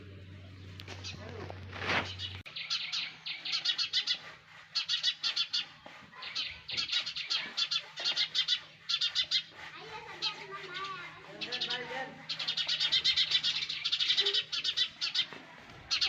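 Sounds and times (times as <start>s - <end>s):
sparrows chirping: 0.0s - 16.0s.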